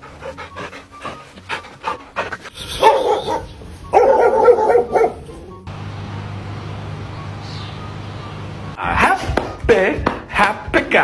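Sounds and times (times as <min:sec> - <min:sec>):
dog vocal calls: 0:00.0 - 0:05.4
dog panting: 0:00.0 - 0:05.6.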